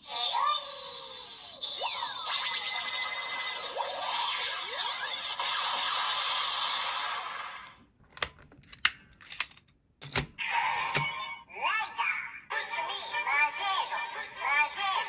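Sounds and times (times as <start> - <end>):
sharp clicks: 8.0 - 11.1.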